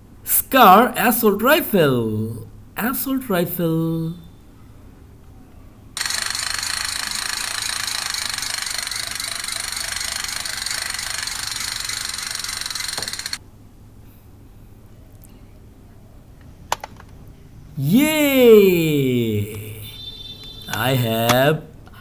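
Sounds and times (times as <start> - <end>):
toy gun machine-gun rattle: 6.0 - 13.4.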